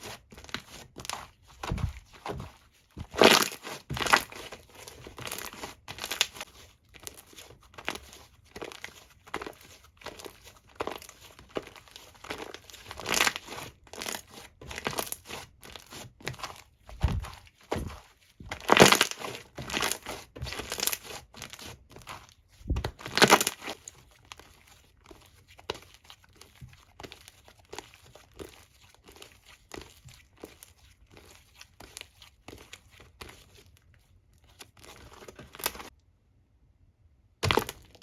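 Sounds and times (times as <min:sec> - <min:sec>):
slime squishes: 0:00.0 - 0:36.0
foam slime crackling: 0:18.6 - 0:21.7.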